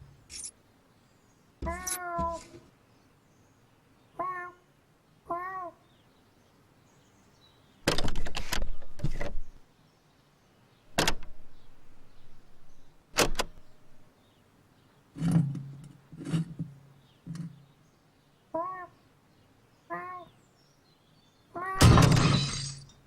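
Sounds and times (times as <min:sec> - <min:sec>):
knocks and clatters: 0:07.9 - 0:09.4, 0:11.0 - 0:11.4, 0:15.2 - 0:17.6.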